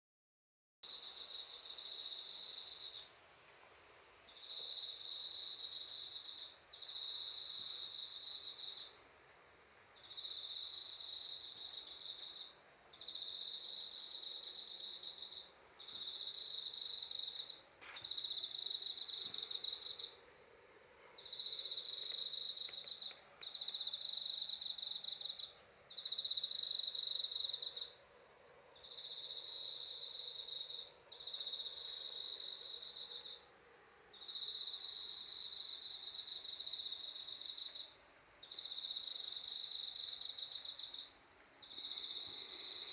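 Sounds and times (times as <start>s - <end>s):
insect high trills: 34.2s - 42.9s.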